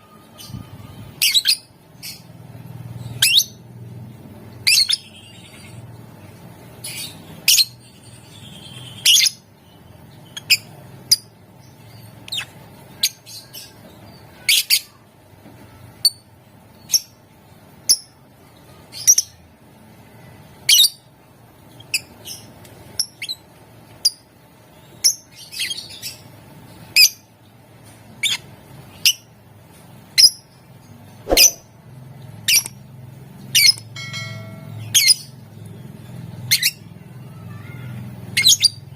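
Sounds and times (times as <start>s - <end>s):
lovebird chirping: 0.0s - 2.3s, 31.3s - 31.7s, 33.5s - 35.4s.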